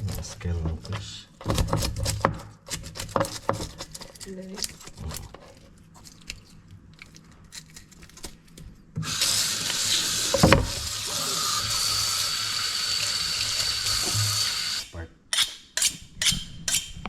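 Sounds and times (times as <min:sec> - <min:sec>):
tap water running into sink: 0:09.0 - 0:14.8.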